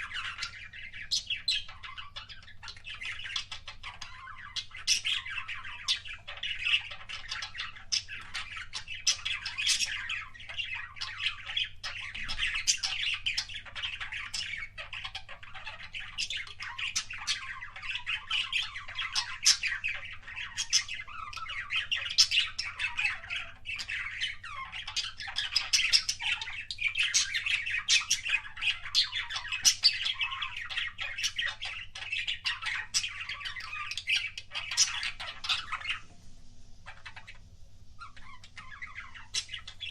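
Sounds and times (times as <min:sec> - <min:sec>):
budgerigars chattering: 0:00.0 - 0:36.1, 0:36.8 - 0:39.9.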